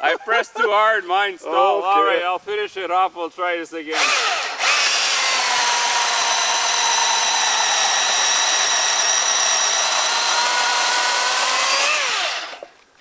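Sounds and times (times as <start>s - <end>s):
chainsaw running: 3.9s - 12.8s.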